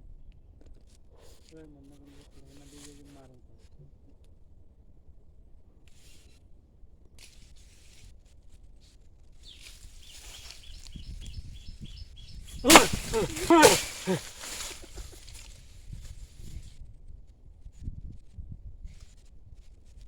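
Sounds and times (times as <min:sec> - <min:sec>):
sudden loud cry: 0:12.6 - 0:15.1.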